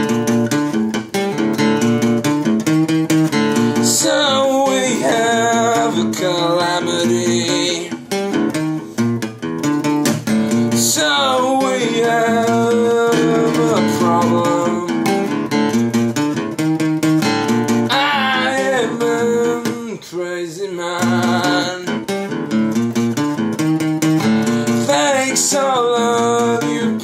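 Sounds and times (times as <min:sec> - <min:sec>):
strummed acoustic guitar: 0:00.0 - 0:27.0
person singing: 0:03.6 - 0:08.1, 0:10.4 - 0:15.4, 0:17.9 - 0:22.1, 0:24.4 - 0:27.0.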